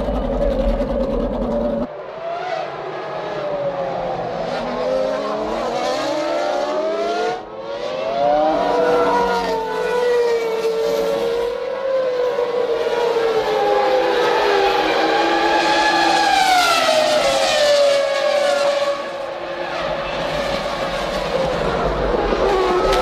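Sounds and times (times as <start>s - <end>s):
racing car engines: 0.0s - 23.0s.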